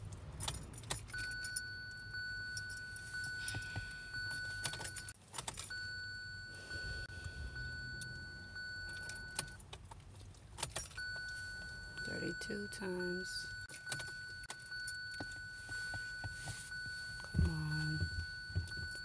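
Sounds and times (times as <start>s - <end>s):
keys jangling and clicking: 0.0s - 5.8s, 8.9s - 11.8s
high electronic warning tone: 1.2s - 5.1s, 5.7s - 9.6s, 11.0s - 19.0s.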